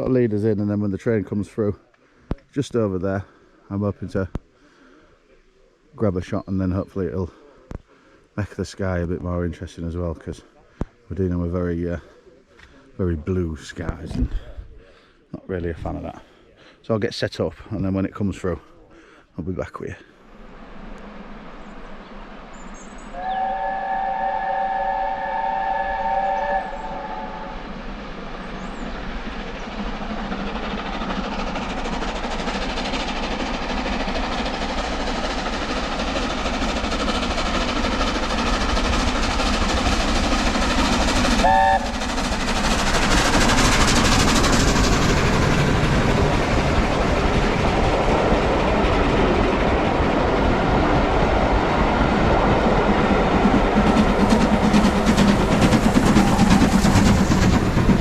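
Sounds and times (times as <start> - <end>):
steam train passing: 8.2 - 58.0
steam locomotive chime whistle: 23.1 - 27.5, 41.4 - 41.9.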